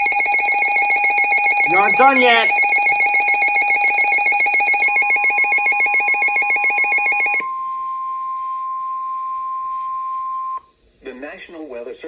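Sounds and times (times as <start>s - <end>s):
pulsing electronic ringing tone: 0.0s - 7.5s
steady high alarm tone: 0.0s - 7.5s.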